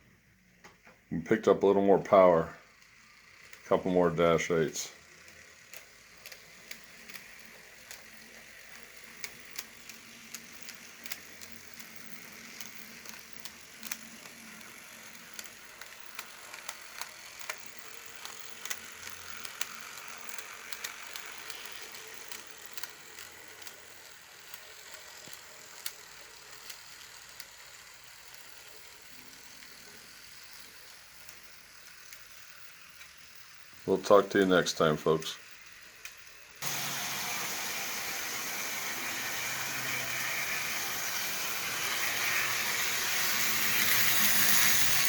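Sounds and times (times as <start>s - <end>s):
model train motor whirring: 0.0s - 45.0s
wheels clicking on track: 0.6s - 45.0s.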